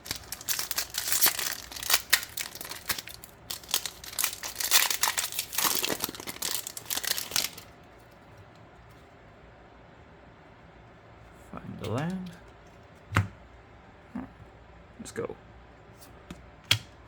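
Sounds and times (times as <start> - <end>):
foil wrapper crinkling: 0.0 - 8.2.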